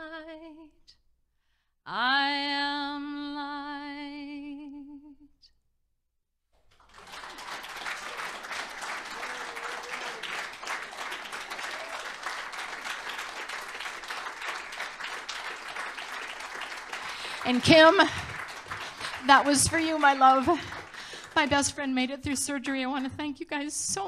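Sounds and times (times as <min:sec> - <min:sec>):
congregation applauding: 0:06.7 - 0:23.1.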